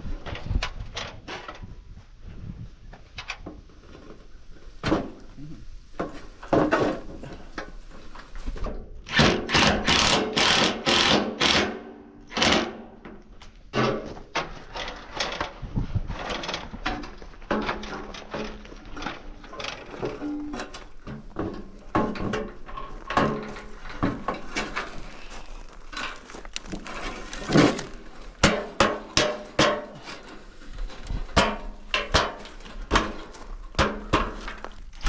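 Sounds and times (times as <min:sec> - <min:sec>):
cordless drill driving bolts: 0:09.1 - 0:12.8
metal parts knocking and clanking: 0:13.7 - 0:25.0.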